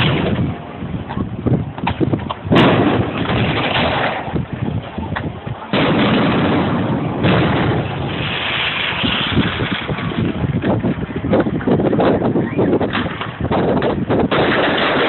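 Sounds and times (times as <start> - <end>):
fireworks bangs with rumble: 0.0 - 15.0
small firework pops: 1.1 - 4.3.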